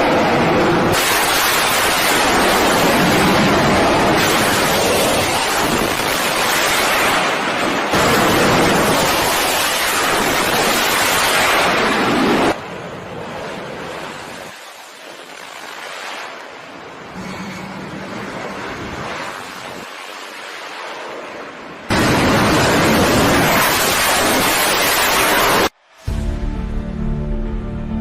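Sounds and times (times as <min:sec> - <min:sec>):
rushing wind: 0:00.0 - 0:26.2.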